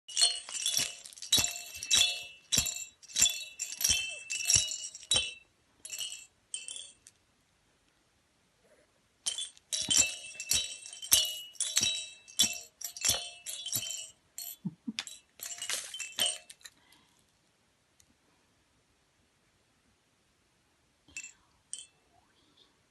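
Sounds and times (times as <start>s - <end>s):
glass objects clinking: 0.1s - 7.1s, 9.2s - 16.7s.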